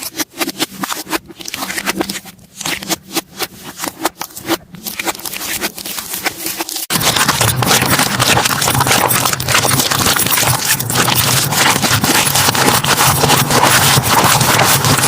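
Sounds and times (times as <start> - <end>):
slime crackling and popping: 5.0 - 15.0.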